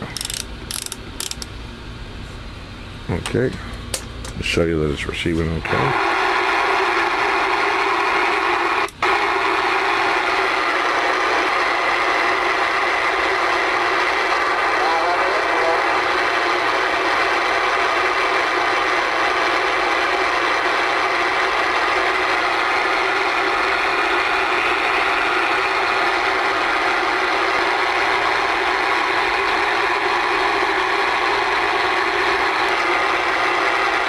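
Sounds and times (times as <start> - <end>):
radio static hiss: 14.3 - 16.7.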